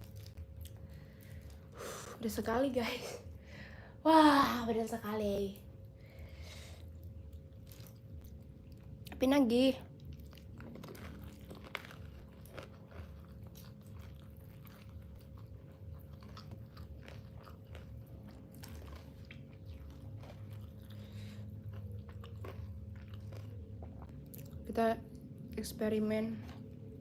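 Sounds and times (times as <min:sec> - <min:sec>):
low hum: 0:00.0 - 0:27.0
chewing and biting chicken: 0:09.9 - 0:24.6.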